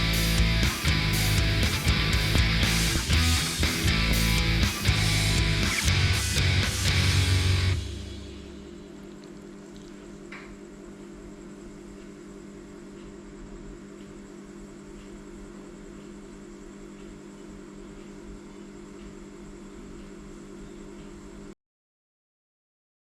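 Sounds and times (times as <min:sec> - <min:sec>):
electrical hum: 0:00.0 - 0:21.6
faint ticks: 0:12.9 - 0:21.4.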